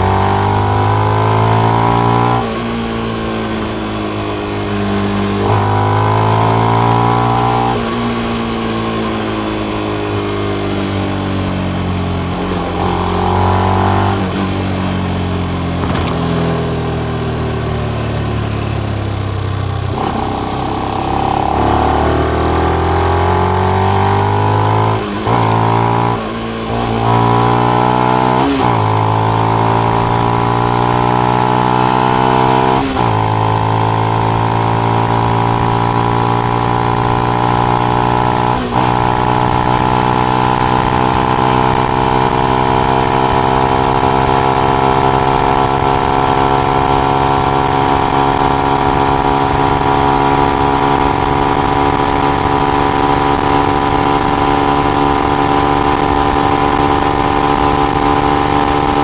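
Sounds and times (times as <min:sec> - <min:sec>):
motorcycle engine revving: 0:00.0 - 0:59.0.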